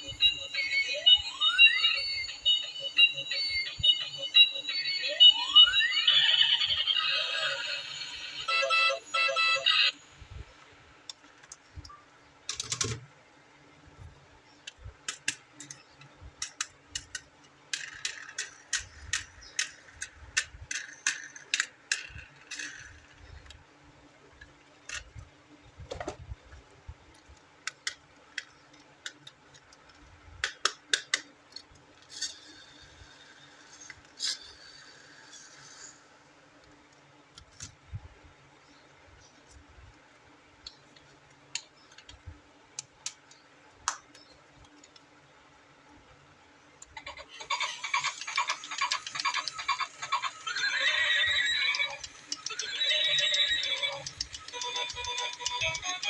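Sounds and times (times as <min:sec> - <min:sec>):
plastic toys clicking and tapping: 0:12.5 - 0:13.1, 0:14.6 - 0:23.6, 0:27.2 - 0:32.5, 0:47.5 - 0:50.4, 0:51.4 - 0:56.0.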